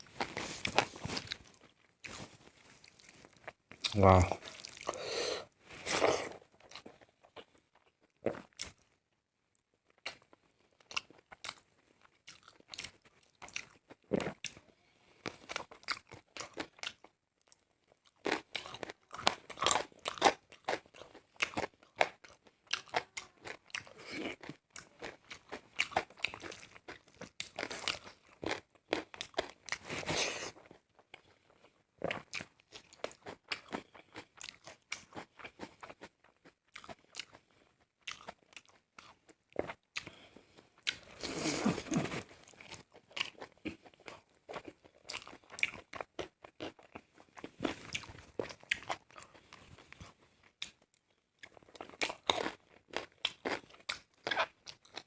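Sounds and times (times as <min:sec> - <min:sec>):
wet chewing: 0:36.7 - 0:50.8.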